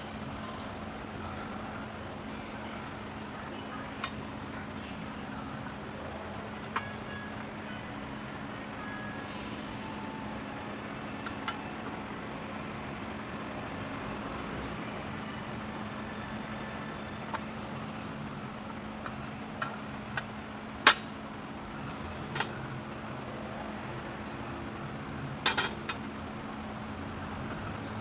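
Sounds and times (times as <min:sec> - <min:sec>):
steady background hum: 0:00.0 - 0:28.0
metal tools clinking on a workbench: 0:14.3 - 0:14.9.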